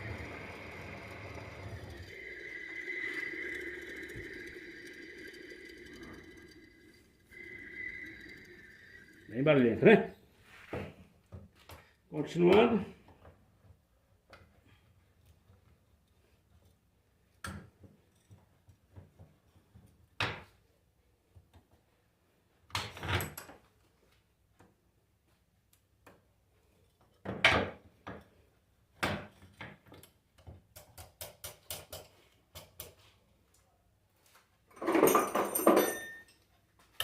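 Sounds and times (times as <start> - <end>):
tools and metal parts clinking: 34.7 - 36.6.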